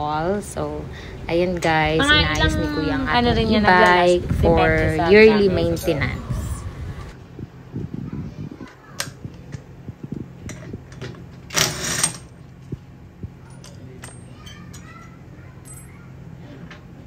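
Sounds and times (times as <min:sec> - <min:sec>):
metal rattle: 0:13.4 - 0:16.8
metal tools clinking: 0:13.4 - 0:16.8.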